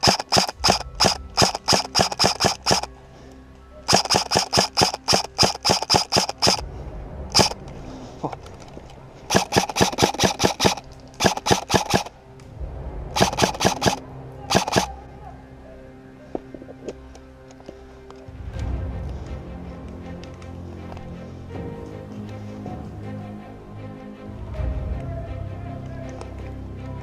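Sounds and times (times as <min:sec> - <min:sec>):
airsoft guns firing: 0:00.0 - 0:02.9, 0:03.9 - 0:06.6, 0:07.3 - 0:07.6, 0:09.3 - 0:12.1, 0:13.2 - 0:14.9
background music: 0:00.0 - 0:27.0.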